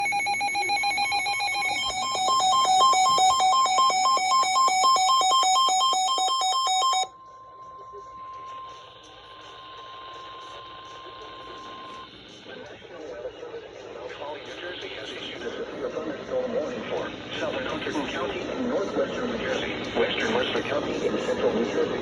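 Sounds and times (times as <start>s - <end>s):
two-pitch electronic beeping: 0.0s - 12.0s
steady alarm tone: 0.0s - 12.2s
radio static: 7.8s - 22.0s.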